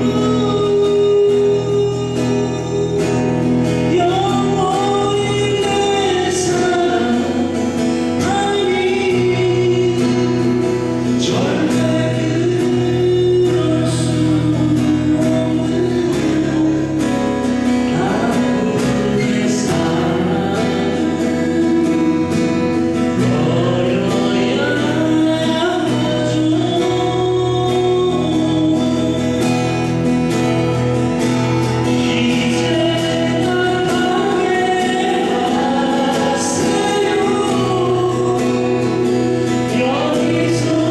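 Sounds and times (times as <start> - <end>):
guitar accompaniment: 0.0 - 40.9
person singing: 0.0 - 40.9.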